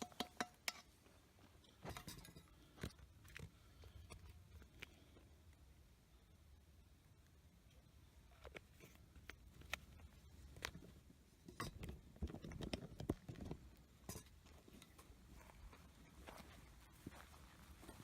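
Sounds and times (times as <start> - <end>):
cooking gear clicking and knocking: 0.0 - 0.9.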